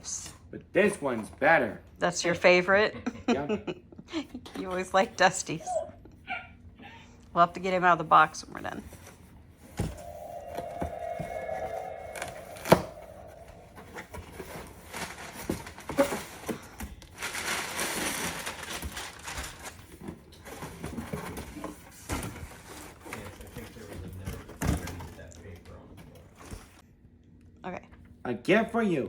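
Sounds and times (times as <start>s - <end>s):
steady hum: 9.8s - 14.3s
paper and packaging crinkling: 17.1s - 20.0s.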